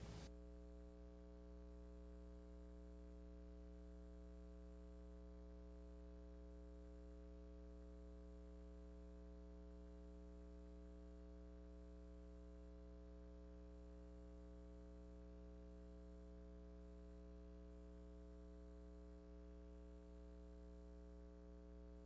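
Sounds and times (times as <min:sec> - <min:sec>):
electrical hum: 0:00.0 - 0:00.3.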